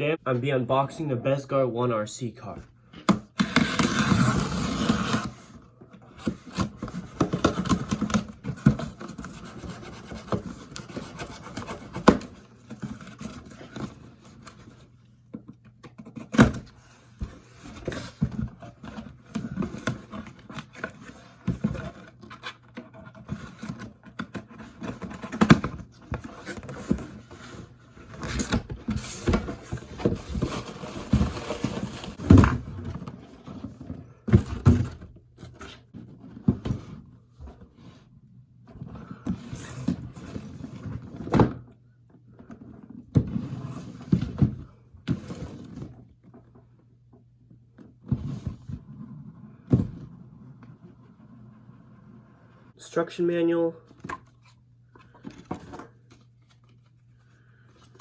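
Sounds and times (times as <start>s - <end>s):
cardboard box scratching and rubbing: 3.4s - 5.5s.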